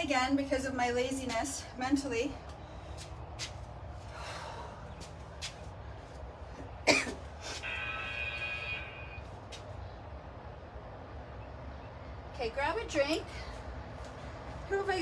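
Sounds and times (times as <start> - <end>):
steady low hum: 0.0 - 15.0
person coughing: 6.9 - 7.2.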